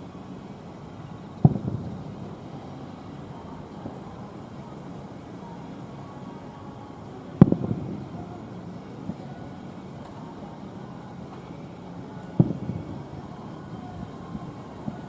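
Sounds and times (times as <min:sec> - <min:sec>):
steady low background noise: 0:00.0 - 0:15.0
firework shells bursting: 0:01.3 - 0:04.5, 0:12.4 - 0:15.0.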